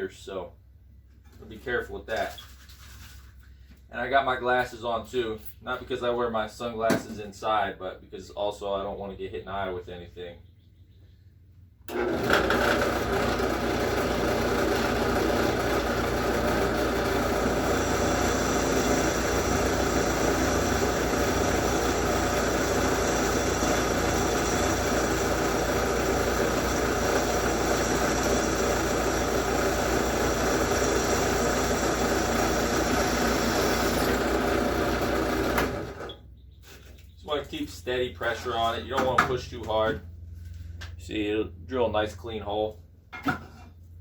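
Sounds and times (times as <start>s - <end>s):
drill press cutting metal: 11.9s - 36.2s.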